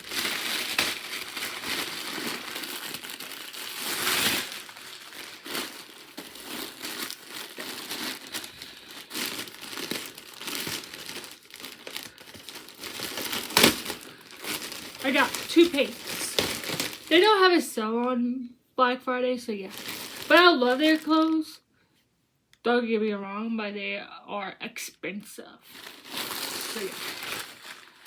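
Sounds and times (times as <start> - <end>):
shopping bag crinkling: 0.0 - 17.5, 19.6 - 21.5, 25.7 - 28.0.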